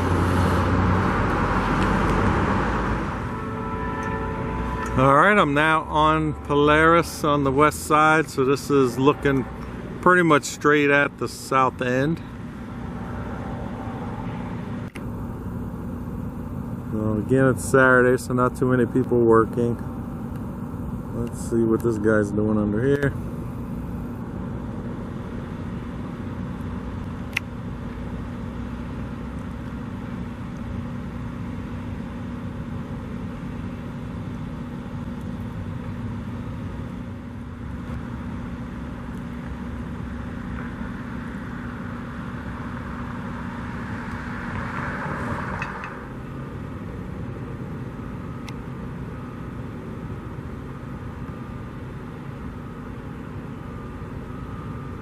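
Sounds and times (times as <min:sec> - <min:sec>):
rising rush: 0:00.0 - 0:10.1, 0:12.4 - 0:14.8, 0:42.6 - 0:46.6
constant low hum: 0:00.0 - 0:55.0
engine and traffic noise: 0:00.0 - 0:55.0.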